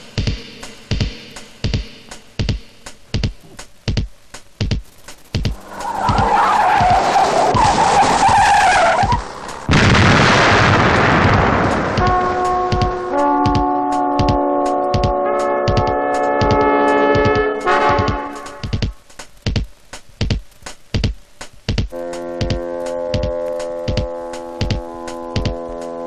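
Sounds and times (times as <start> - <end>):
beat of low thumps: 0.0 - 7.6, 9.0 - 25.7
loud rushing noise: 5.4 - 13.1.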